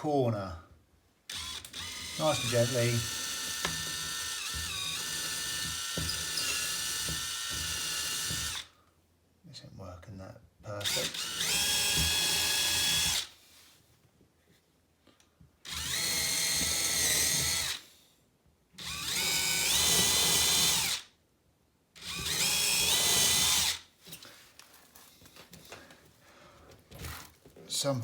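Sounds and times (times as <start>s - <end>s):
power drill boring plasterboard: 1.3s - 8.7s, 10.8s - 13.4s, 15.6s - 18.0s, 18.8s - 21.1s, 22.0s - 23.9s.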